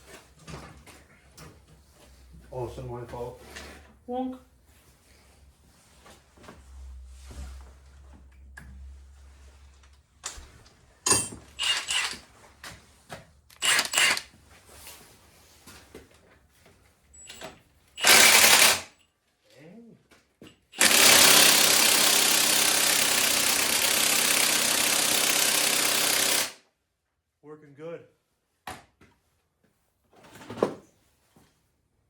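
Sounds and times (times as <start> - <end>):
tools clattering and knocking: 10.2 - 12.8, 13.5 - 14.3, 17.1 - 18.9
power tool running: 11.6 - 12.2, 13.5 - 14.3, 18.0 - 18.9, 20.8 - 26.6.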